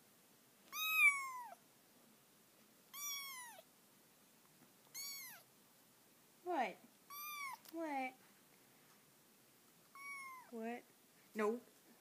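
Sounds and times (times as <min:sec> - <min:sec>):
kitten meowing: 0:00.7 - 0:01.6, 0:02.9 - 0:03.7, 0:04.9 - 0:05.5, 0:07.1 - 0:07.7, 0:09.9 - 0:10.6.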